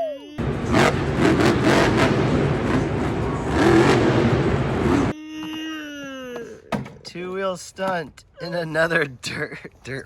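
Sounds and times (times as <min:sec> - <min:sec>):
monster truck engine revving: 0:00.4 - 0:05.1.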